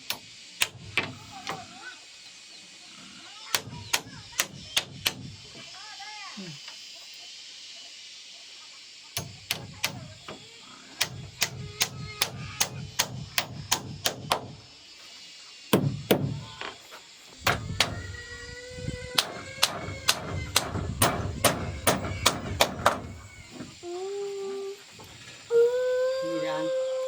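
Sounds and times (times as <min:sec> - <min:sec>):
hammer striking timber: 0:03.6 - 0:05.4, 0:09.2 - 0:10.4, 0:11.0 - 0:14.6, 0:15.7 - 0:16.4, 0:17.4 - 0:18.2, 0:19.1 - 0:23.2.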